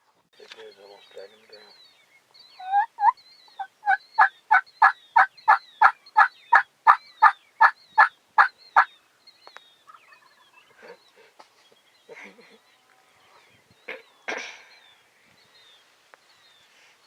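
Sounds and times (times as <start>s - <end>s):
turkey yelping: 2.6s - 8.9s.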